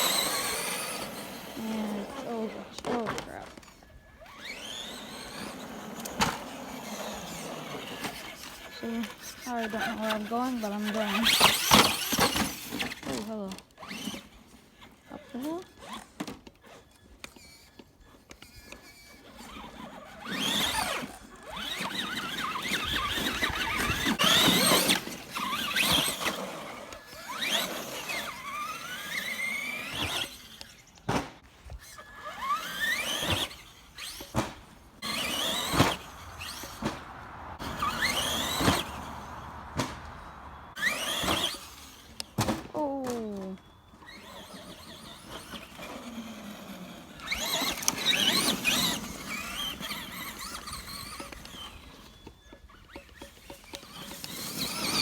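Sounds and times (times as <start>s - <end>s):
rc truck electric motor whining: 0.0s - 55.0s
rushing noise of driving: 35.0s - 42.3s.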